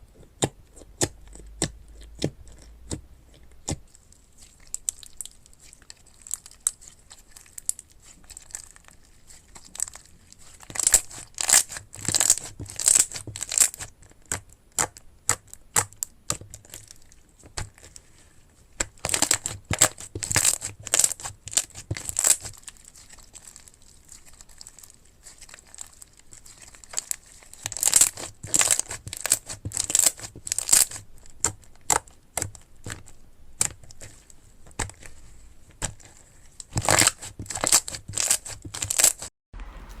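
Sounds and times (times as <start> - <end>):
slime crackling and popping: 0.1 - 18.0, 18.7 - 39.3.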